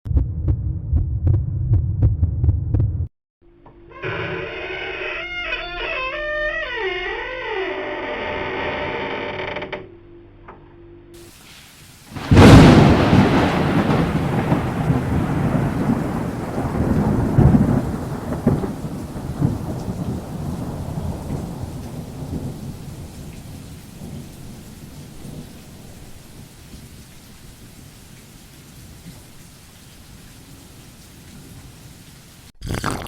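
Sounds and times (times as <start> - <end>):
faint rain hiss: 11.2 - 32.5
thunder crack and rumble: 12.1 - 26.9.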